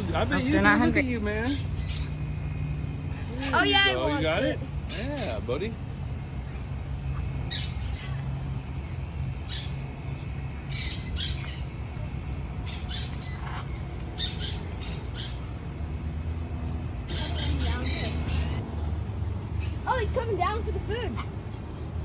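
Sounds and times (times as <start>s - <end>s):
parrots squawking: 0.0s - 2.3s, 3.0s - 5.4s, 6.5s - 9.9s, 10.7s - 11.7s, 12.5s - 15.5s, 17.0s - 18.6s
steady low rumble: 0.0s - 22.0s.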